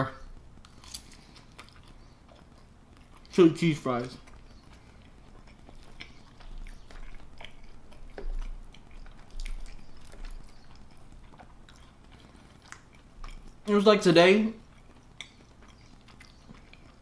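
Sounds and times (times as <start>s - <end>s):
person chewing food: 0.2s - 13.7s, 14.6s - 17.0s.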